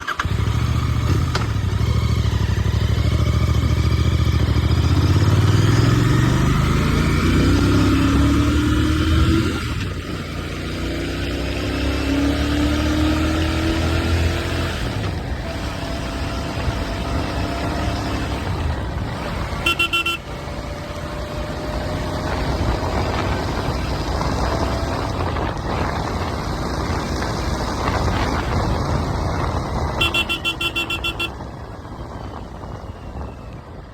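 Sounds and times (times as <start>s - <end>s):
motorcycle engine running: 0.0s - 8.6s, 14.8s - 33.1s
road and wind noise: 0.0s - 33.9s
vehicle horn: 19.5s - 20.4s, 29.9s - 31.5s.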